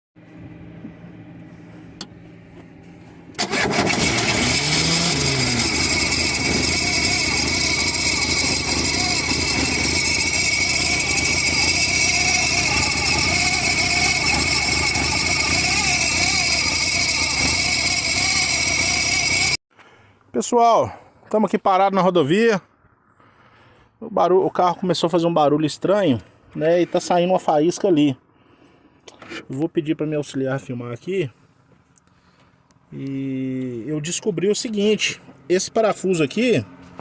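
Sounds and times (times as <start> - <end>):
car engine running: 0.2 - 19.6
high whine over fast clatter: 3.4 - 19.6.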